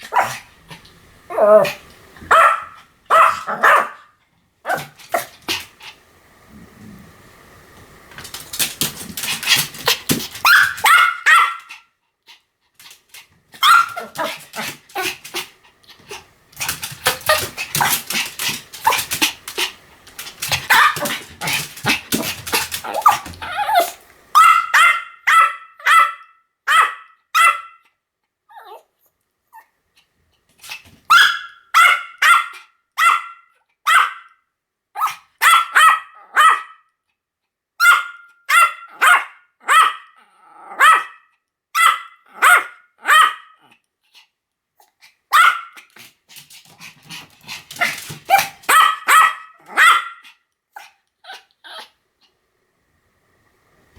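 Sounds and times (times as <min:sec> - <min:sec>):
small dog yapping: 0:00.0 - 0:00.5, 0:01.3 - 0:04.1, 0:08.6 - 0:11.8, 0:13.6 - 0:15.5, 0:16.1 - 0:27.8, 0:30.6 - 0:34.3, 0:35.0 - 0:36.8, 0:37.8 - 0:41.2, 0:41.8 - 0:43.7, 0:45.3 - 0:46.5, 0:47.1 - 0:51.9.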